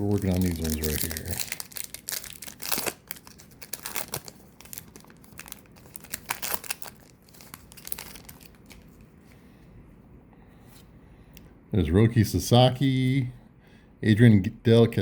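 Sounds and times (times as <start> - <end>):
card pack wrapper crinkling and tearing: 0.0 - 9.1.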